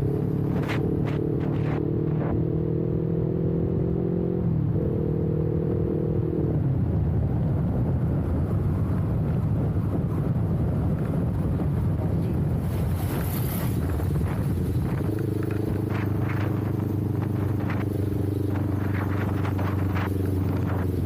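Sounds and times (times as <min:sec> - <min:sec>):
motorcycle engine running: 0:00.0 - 0:02.5, 0:07.7 - 0:21.0
wind buffeting microphone: 0:06.2 - 0:21.0.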